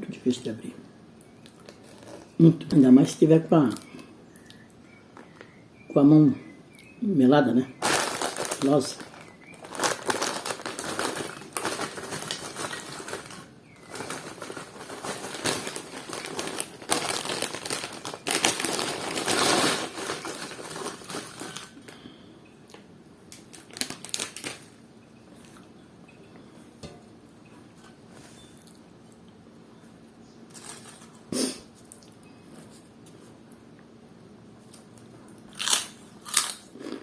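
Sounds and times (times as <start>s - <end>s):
plastic sachet crinkling: 7.8s - 21.9s, 23.3s - 24.8s.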